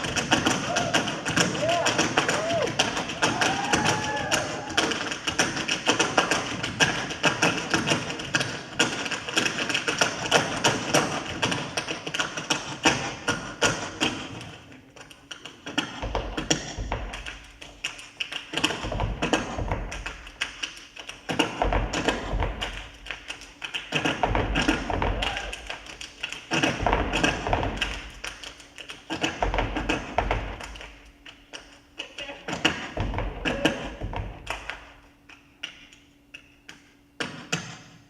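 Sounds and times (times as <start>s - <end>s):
dancers' feet tapping and clicking: 0.0s - 38.0s
deep thuds: 26.6s - 28.2s.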